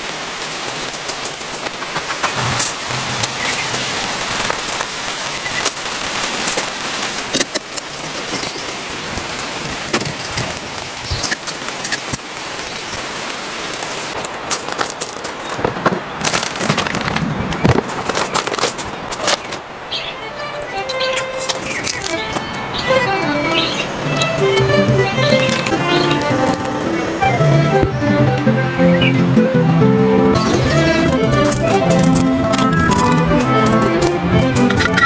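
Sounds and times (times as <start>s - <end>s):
raindrops tapping a surface: 0.0s - 19.6s, 23.2s - 28.0s
steady rain falling: 0.0s - 35.0s.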